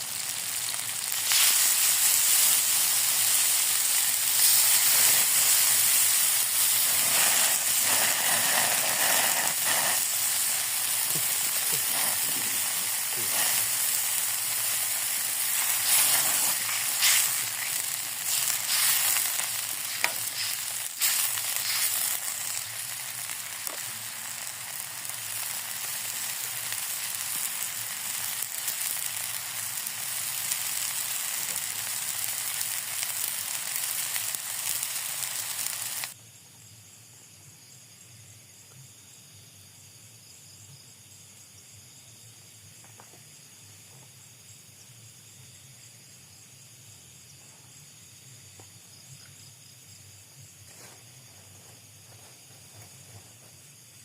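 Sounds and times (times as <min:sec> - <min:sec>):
food sizzling in hot oil: 0:00.0 - 0:36.2.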